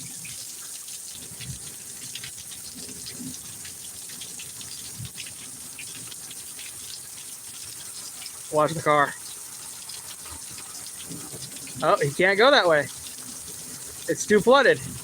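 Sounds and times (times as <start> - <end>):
heavy rain pouring: 8.4 - 15.0.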